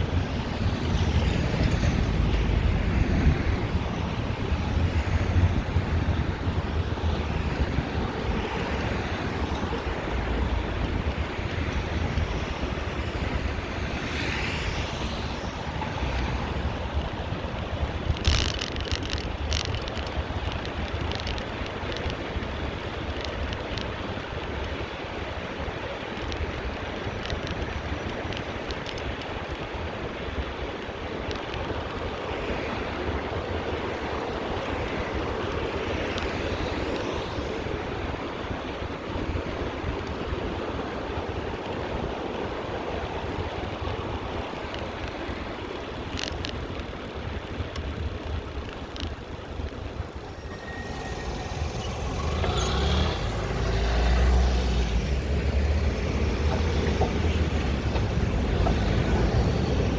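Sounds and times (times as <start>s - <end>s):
road traffic noise: 0.0s - 59.9s
wind on microphone: 0.0s - 59.9s
heavy vehicle engine rumble: 43.1s - 59.9s.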